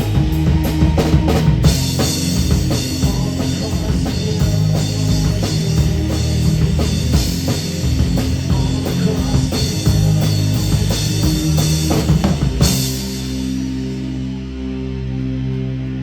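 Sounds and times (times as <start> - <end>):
drum kit: 0.0 - 14.7.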